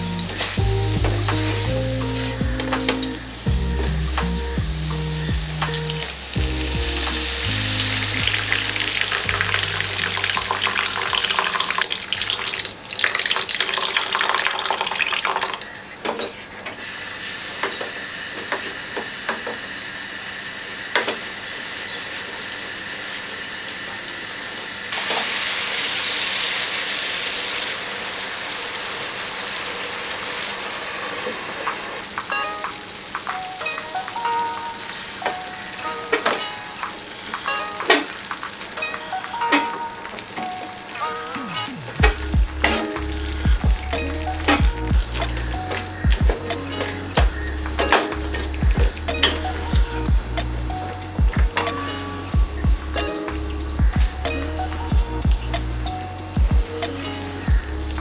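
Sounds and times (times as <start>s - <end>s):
vegetables sizzling in oil: 0.0s - 15.7s, 16.8s - 58.0s.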